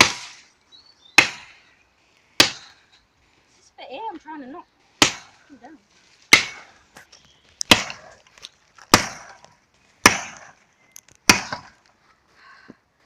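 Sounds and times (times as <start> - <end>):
axe chopping wood: 0.0 - 0.5, 1.2 - 1.6, 2.4 - 2.8, 5.0 - 5.4, 6.3 - 6.8, 7.6 - 8.2, 8.8 - 10.6, 11.2 - 11.8.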